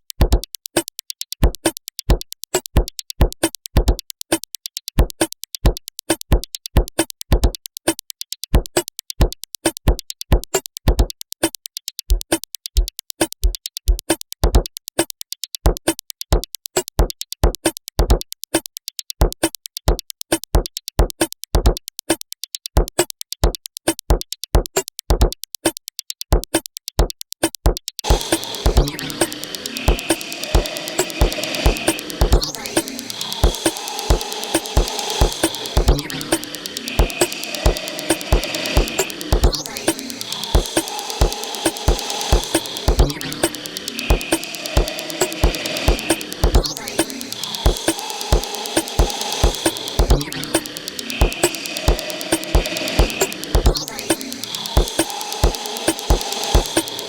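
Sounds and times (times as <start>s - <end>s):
drum machine beat loop: 27.4s - 57.0s.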